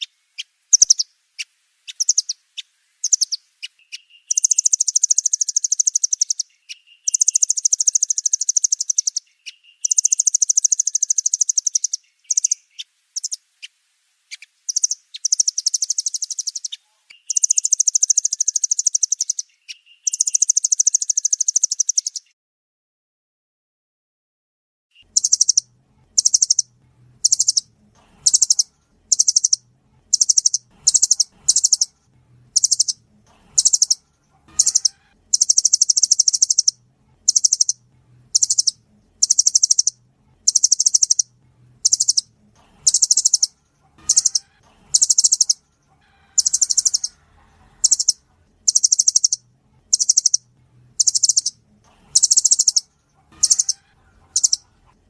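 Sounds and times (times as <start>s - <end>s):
bird calling in high trills: 28.3s - 31.9s, 33.6s - 34.0s, 34.6s - 36.7s, 38.4s - 42.2s, 42.9s - 43.5s, 44.1s - 45.6s, 46.4s - 47.2s, 47.8s - 50.4s, 51.0s - 51.5s, 52.2s - 54.6s.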